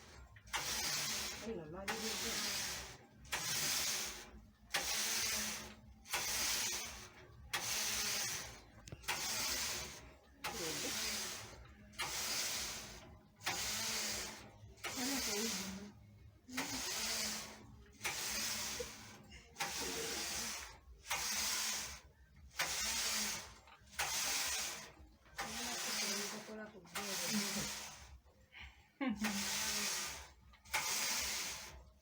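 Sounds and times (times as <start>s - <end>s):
knitting machine carriage swishing: 0.0s - 28.4s, 29.2s - 32.0s.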